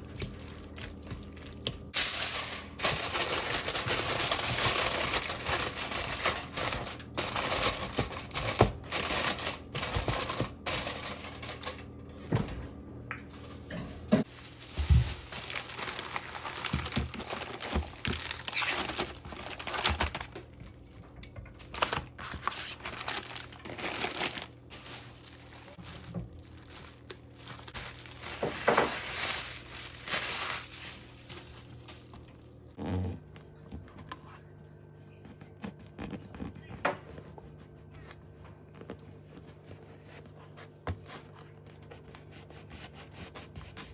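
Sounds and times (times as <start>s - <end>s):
crinkling handling noises: 0.0s - 12.6s, 13.2s - 32.8s.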